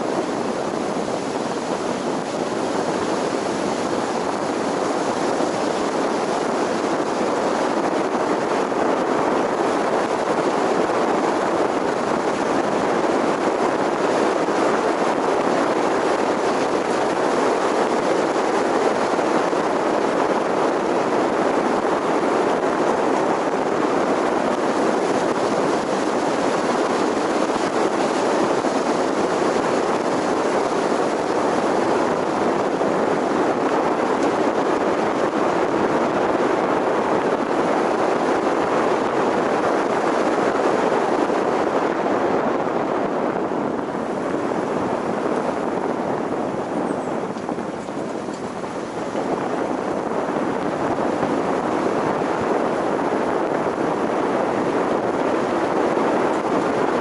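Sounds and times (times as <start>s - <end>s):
vehicle road and wind noise: 0.0s - 57.0s.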